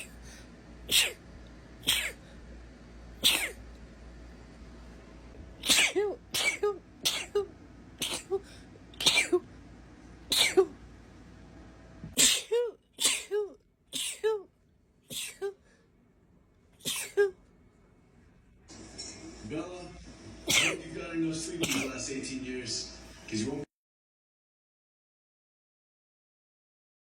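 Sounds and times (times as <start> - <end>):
woman sneezing: 0.9 - 1.2, 1.8 - 2.2, 3.2 - 3.6, 5.6 - 9.4, 10.3 - 10.7, 12.2 - 14.5, 15.1 - 15.6, 16.8 - 17.4.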